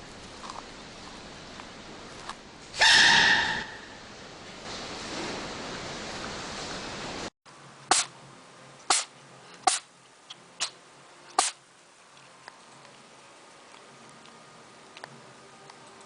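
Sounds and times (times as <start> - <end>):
animal sneezing: 7.9 - 8.1, 8.9 - 9.9, 10.6 - 10.8, 11.4 - 11.6.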